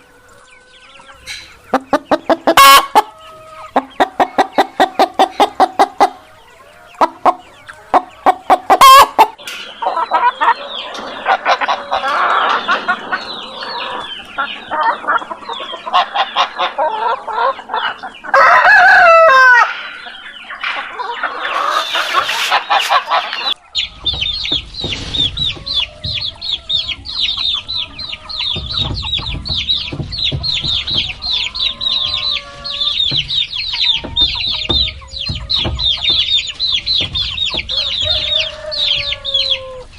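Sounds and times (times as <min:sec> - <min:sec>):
chickens clucking: 0:00.0 - 0:39.9
chicks peeping: 0:00.0 - 0:39.9
rooster crowing: 0:18.3 - 0:19.8, 0:37.6 - 0:39.9.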